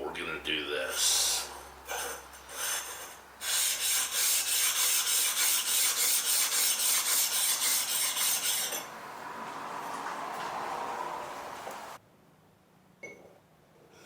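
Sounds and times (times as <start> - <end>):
blade rasping on sharpening stone: 1.9 - 8.9.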